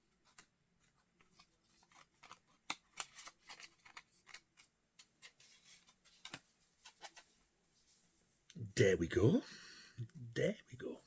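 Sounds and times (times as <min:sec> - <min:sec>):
paper and card rustling: 0:00.2 - 0:07.4.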